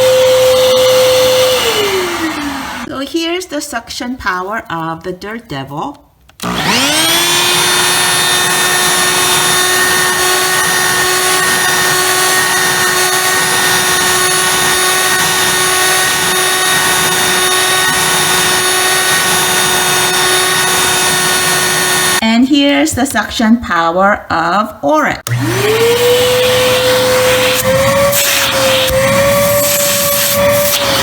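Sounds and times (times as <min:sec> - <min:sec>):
handheld vacuum cleaner whine: 0:00.0 - 0:02.9, 0:06.4 - 0:22.2, 0:25.3 - 0:31.0.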